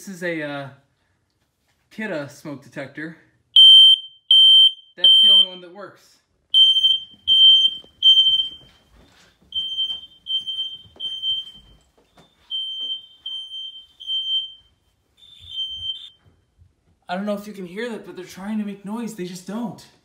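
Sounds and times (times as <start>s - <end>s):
smoke alarm beeping: 3.6s - 5.6s, 6.5s - 16.3s.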